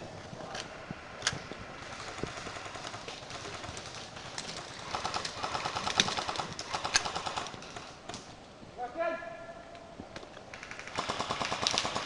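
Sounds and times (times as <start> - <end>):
airsoft gun rapid fire: 1.8 - 7.9, 10.5 - 12.0.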